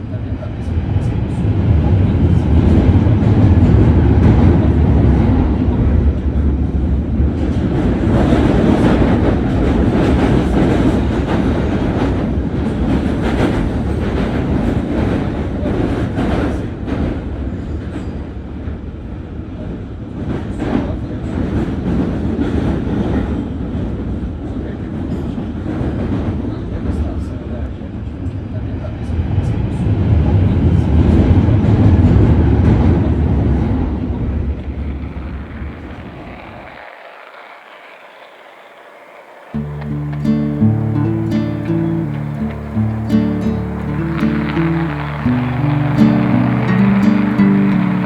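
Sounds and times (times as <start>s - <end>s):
underground train rumble: 0.0s - 48.0s
rail clicks: 33.5s - 48.0s.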